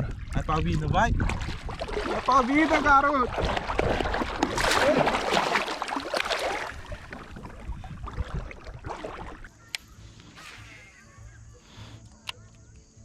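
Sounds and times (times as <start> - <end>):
water splashing against kayak: 0.0 - 9.6.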